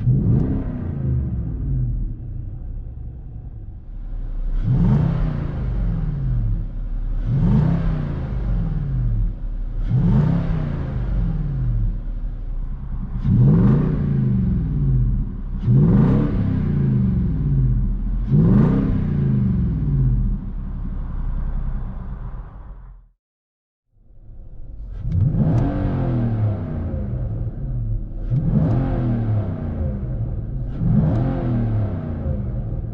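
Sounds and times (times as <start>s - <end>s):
truck engine revving: 0.0s - 23.1s, 24.8s - 32.9s.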